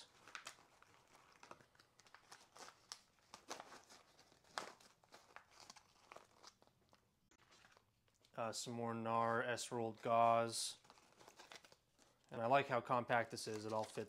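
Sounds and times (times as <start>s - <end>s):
packaging crinkling and rustling: 0.0s - 8.4s, 10.7s - 12.3s, 13.3s - 14.0s.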